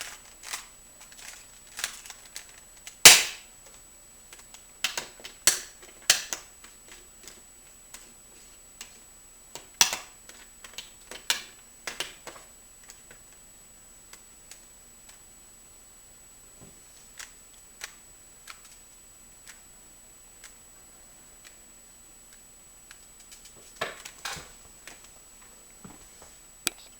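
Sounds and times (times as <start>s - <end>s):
puzzle cube clicking as turned: 17.2s - 18.8s.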